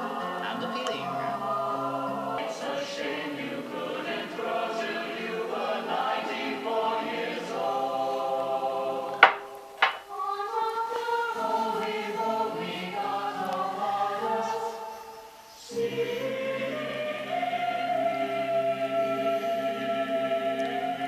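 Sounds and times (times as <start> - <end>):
choir singing on vinyl record: 0.0 - 21.0
sharp knocks: 9.2 - 10.1.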